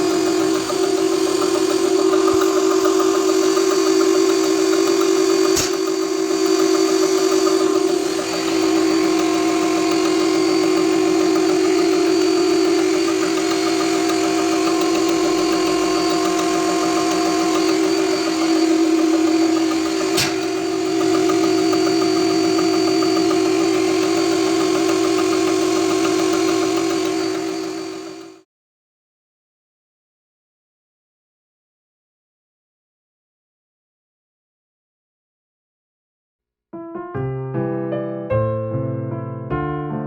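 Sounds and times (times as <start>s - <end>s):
sharp clicks: 0.0s - 28.3s
diesel truck engine running: 0.0s - 28.4s
steady whine: 0.0s - 28.4s.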